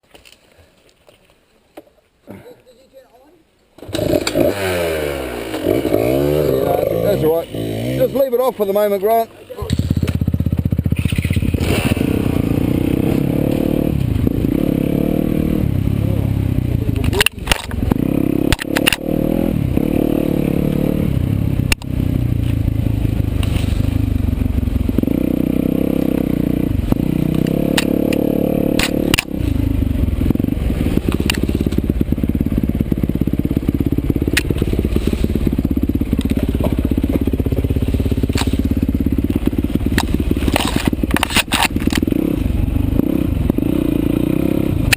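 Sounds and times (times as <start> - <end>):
motorcycle engine revving: 3.8 - 44.9.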